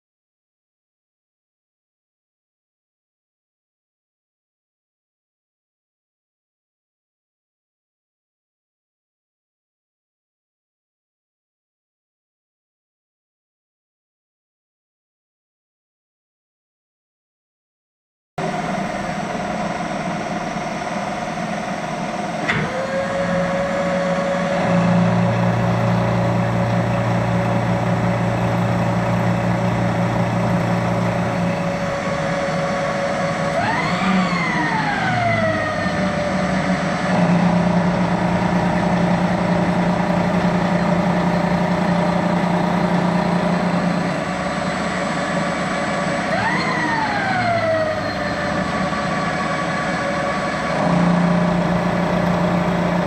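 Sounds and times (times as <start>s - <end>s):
low hum: 18.4s - 46.3s
machine tool motor whine: 18.4s - 53.0s.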